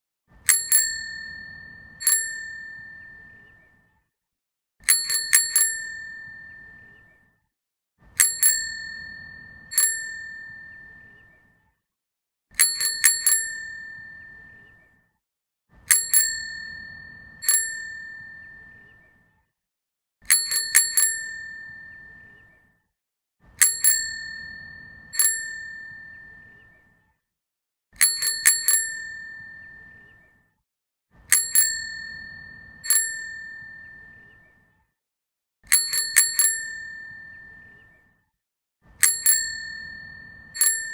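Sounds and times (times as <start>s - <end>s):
bicycle bell dinging: 0.5s - 3.5s, 4.8s - 7.0s, 8.2s - 11.2s, 12.6s - 14.6s, 15.9s - 18.9s, 20.3s - 22.4s, 23.6s - 26.6s, 28.0s - 30.0s, 31.3s - 34.3s, 35.7s - 37.7s, 39.0s - 40.9s.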